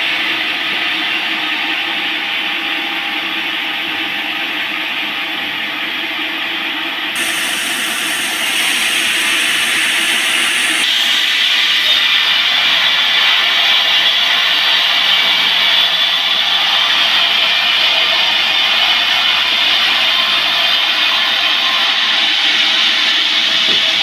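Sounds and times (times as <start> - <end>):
band saw cutting log: 7.2 - 11.8.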